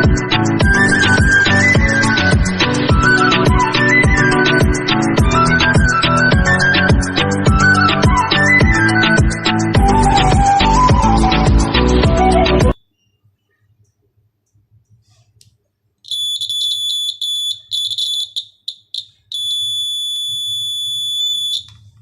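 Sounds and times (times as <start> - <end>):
high-pitched electronic alarm buzzer: 16.1 - 21.7.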